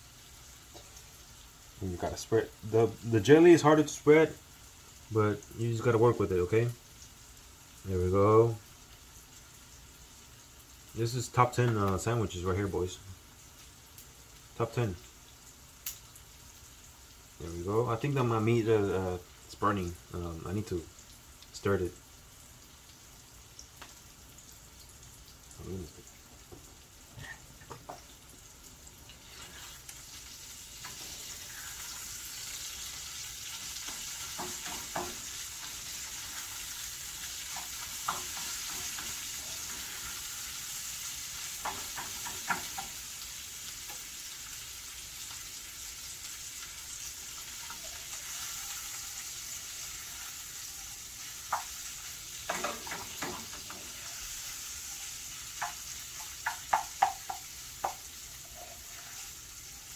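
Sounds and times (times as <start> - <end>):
meat sizzling in a pan: 0.0 - 59.9.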